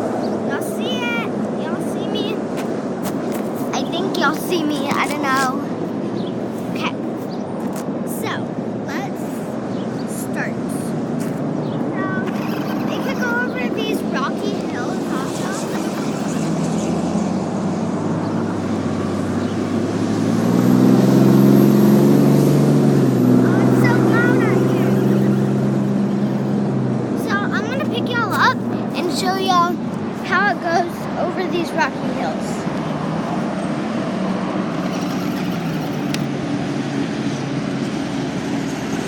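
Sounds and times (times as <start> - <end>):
combustion engine droning: 0.0 - 39.0
outdoor background noise: 0.0 - 39.0
motor droning: 11.5 - 26.7.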